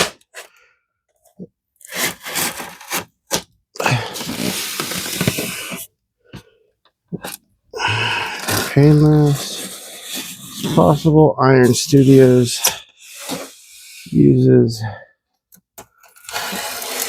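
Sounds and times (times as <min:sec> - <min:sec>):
scraping on cardboard packaging: 0:01.8 - 0:03.4, 0:04.0 - 0:05.9, 0:08.2 - 0:10.8, 0:16.0 - 0:17.0.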